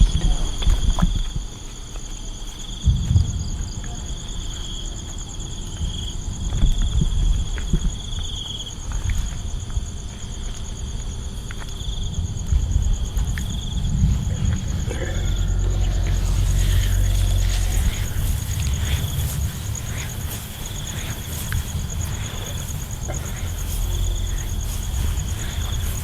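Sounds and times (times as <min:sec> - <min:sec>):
insects chirring: 0:00.0 - 0:26.0
uneven low rumble: 0:11.9 - 0:26.0.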